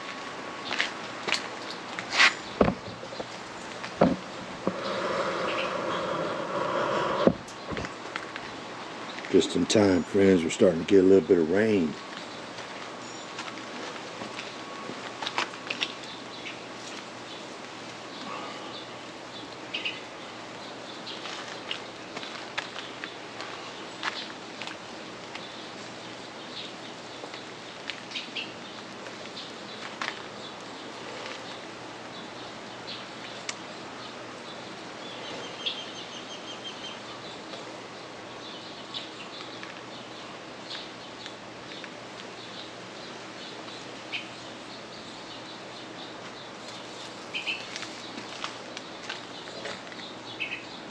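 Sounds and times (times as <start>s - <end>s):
sharp crackles and rustles: 0.0s - 9.4s, 12.0s - 18.4s, 19.0s - 35.5s, 37.2s - 44.0s, 46.0s - 50.5s
wind: 0.0s - 50.9s
small birds chirping: 0.6s - 50.9s
wind rushing: 4.6s - 7.8s.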